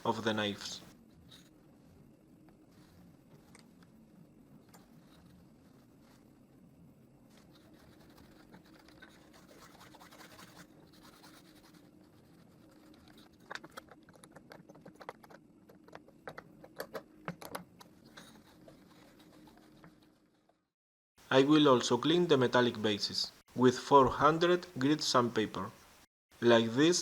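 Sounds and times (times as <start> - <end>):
faint rubbing and scraping: 0.0 - 16.8, 17.8 - 20.7.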